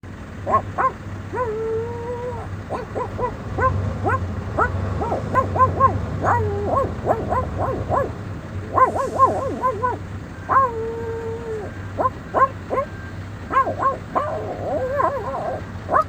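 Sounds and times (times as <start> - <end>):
dog yipping and whining: 0.5 - 16.0.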